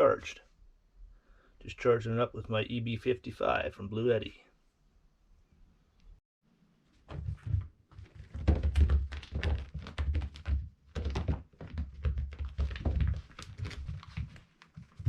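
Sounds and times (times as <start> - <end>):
cat thumping on floor: 7.1 - 13.4.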